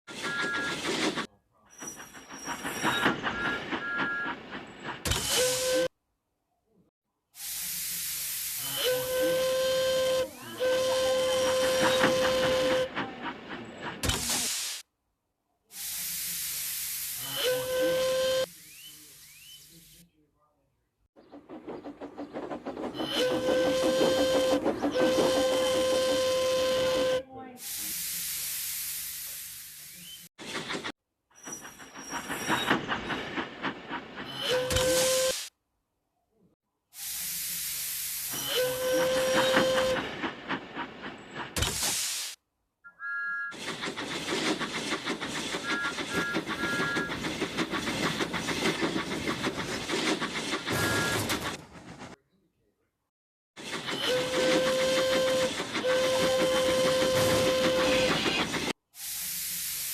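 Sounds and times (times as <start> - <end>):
steam train chuffing: 0.1 - 5.9, 7.4 - 14.8, 15.7 - 20.0, 21.2 - 35.5, 37.0 - 42.4, 43.5 - 52.2, 53.6 - 59.9
steam whistle: 5.3 - 5.9, 8.6 - 13.0, 17.2 - 18.6, 23.0 - 27.4, 34.4 - 35.5, 38.3 - 40.1, 50.7 - 51.3, 53.9 - 58.4
steam hissing: 7.4 - 14.8, 15.7 - 20.0, 21.9 - 30.6, 31.6 - 35.5, 37.0 - 42.4, 53.6 - 59.9.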